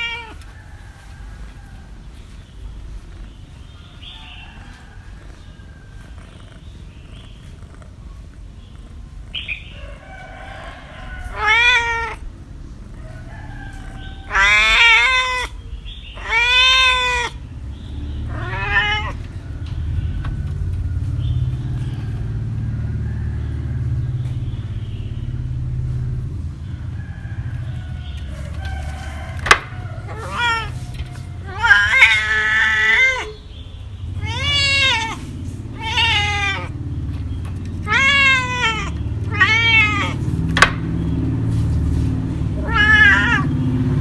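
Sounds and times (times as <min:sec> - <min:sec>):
cat meowing: 0:00.0 - 0:00.5, 0:11.1 - 0:12.3, 0:13.6 - 0:17.4, 0:18.3 - 0:19.4, 0:29.3 - 0:36.8, 0:37.6 - 0:40.7, 0:42.6 - 0:43.6.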